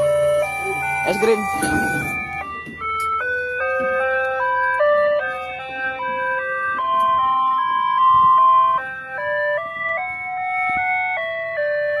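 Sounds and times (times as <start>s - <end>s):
electronic ice cream jingle: 0.0s - 9.3s.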